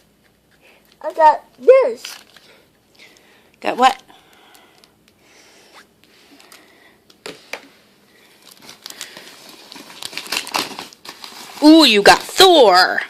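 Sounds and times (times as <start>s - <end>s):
rustling plastic packaging: 2.0s - 2.6s, 8.2s - 13.0s.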